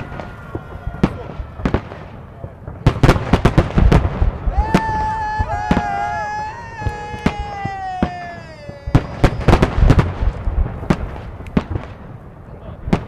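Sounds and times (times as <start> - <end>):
crowd shouting: 0.0 - 2.8, 4.2 - 10.2
fireworks bangs: 0.0 - 13.0.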